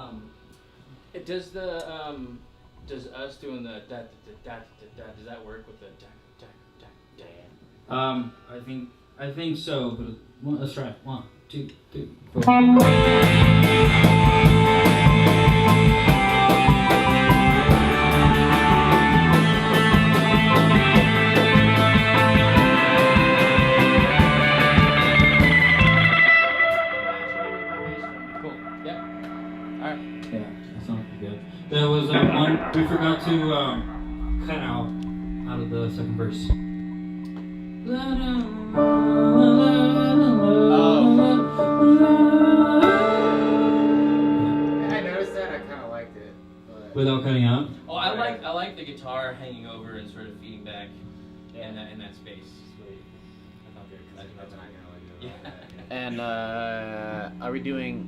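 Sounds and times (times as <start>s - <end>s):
electric guitar: 12.3s - 47.6s
drum kit beat: 12.4s - 26.9s, 32.1s - 39.1s
band playing a held chord: 12.4s - 58.0s
person singing: 37.8s - 45.1s.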